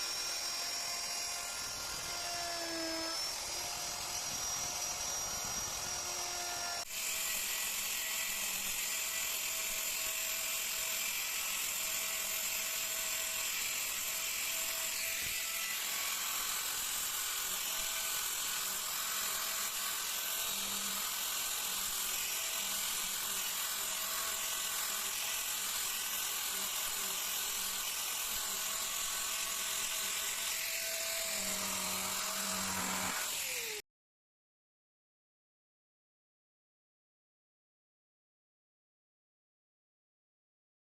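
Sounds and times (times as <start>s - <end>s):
power tool whining while carving wood: 0.0s - 33.8s.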